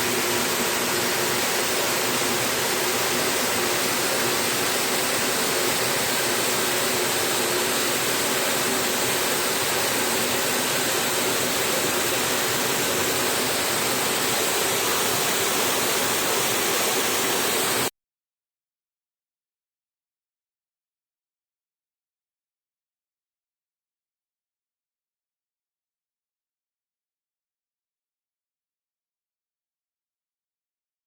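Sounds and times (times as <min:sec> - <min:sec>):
water jet spraying metal: 0:00.0 - 0:17.9.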